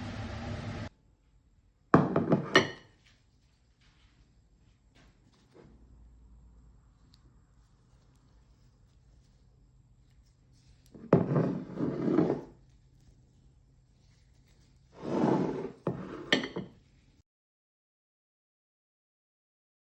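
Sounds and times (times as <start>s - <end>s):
dishes clinking: 2.0s - 3.0s, 15.9s - 16.8s
utensil scraping dish: 10.9s - 12.6s, 15.0s - 16.8s.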